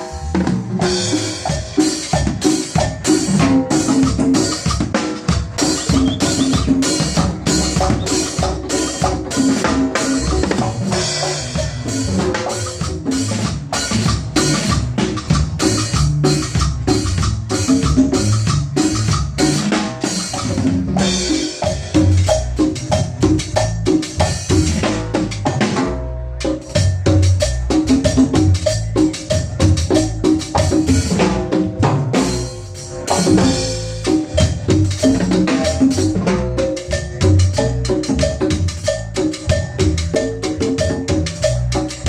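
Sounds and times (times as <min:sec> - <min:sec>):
band playing instrumental music: 0:00.0 - 0:42.0
drum kit beat: 0:00.0 - 0:42.0
pitched percussion: 0:00.0 - 0:42.0.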